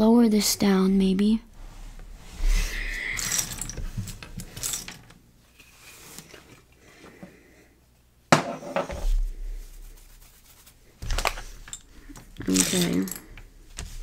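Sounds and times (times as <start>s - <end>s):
plastic pieces clattering: 2.8s - 5.2s, 11.0s - 14.0s.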